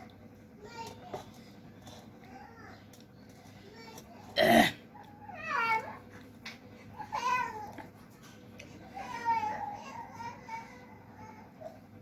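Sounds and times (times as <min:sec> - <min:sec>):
loud cough-like burst: 0:04.4 - 0:04.8.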